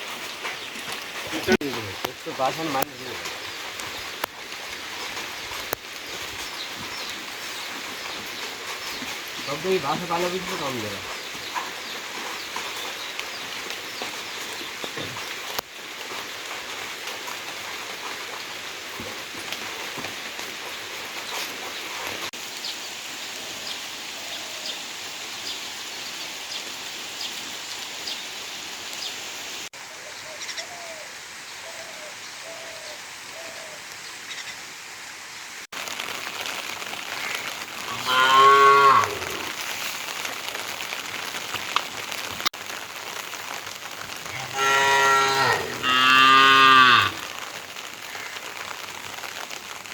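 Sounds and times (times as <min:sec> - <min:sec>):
rain hissing: 0:00.0 - 0:49.9
cattle mooing: 0:44.4 - 0:47.2.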